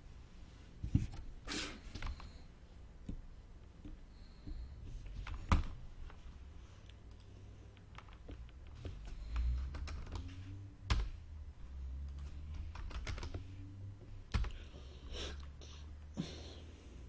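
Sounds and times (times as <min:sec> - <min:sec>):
typing on a keyboard: 0:02.0 - 0:02.3, 0:07.8 - 0:10.3, 0:12.1 - 0:13.5, 0:14.3 - 0:14.6.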